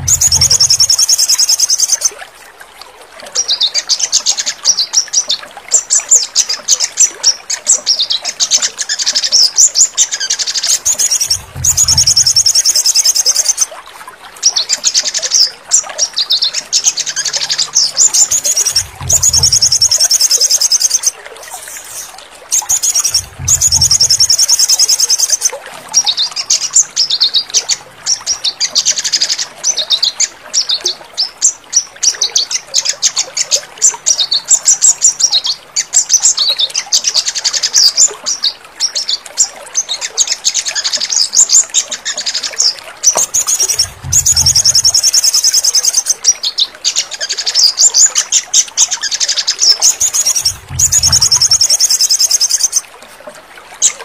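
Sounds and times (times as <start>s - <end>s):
short low rumble: 0.0s - 1.0s, 11.3s - 12.4s, 18.6s - 19.9s, 23.0s - 24.2s, 43.8s - 44.9s, 50.4s - 51.7s
songbird trilling: 0.0s - 2.1s, 10.7s - 13.7s, 17.0s - 25.6s, 43.2s - 46.2s, 49.2s - 52.8s.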